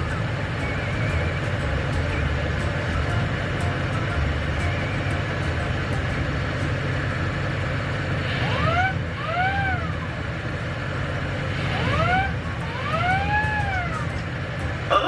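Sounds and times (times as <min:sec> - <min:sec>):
two-part wolf whistle effect: 0:00.0 - 0:05.6
car engine rumbling: 0:00.0 - 0:15.0.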